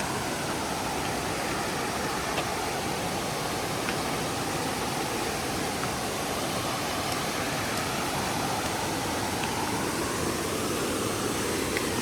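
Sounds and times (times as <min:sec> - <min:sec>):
river and waterfalls rushing: 0:00.0 - 0:12.0.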